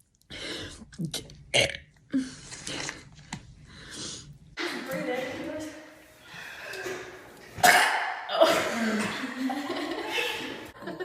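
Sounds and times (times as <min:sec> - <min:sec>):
woman belching: 0:01.5 - 0:01.9.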